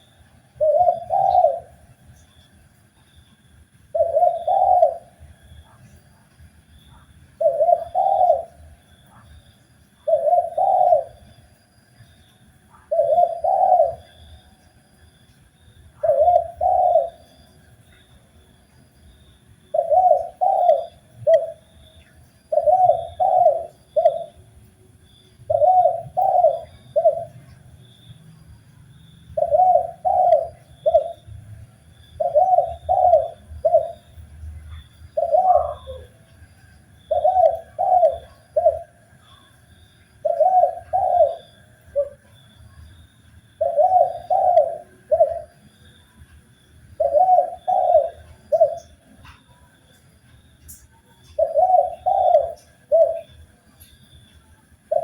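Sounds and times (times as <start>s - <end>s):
dove cooing: 0.0s - 2.2s, 3.9s - 6.0s, 6.9s - 11.4s, 12.6s - 14.6s, 15.9s - 17.6s, 19.7s - 21.7s, 22.4s - 24.5s, 25.1s - 28.4s, 29.3s - 42.8s, 43.5s - 45.7s, 46.9s - 49.7s, 50.7s - 53.8s.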